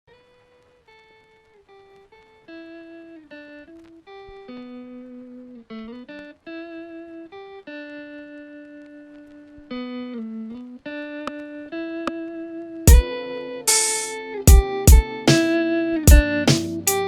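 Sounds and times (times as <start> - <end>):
instrumental melody of held notes: 12.9 - 17.0.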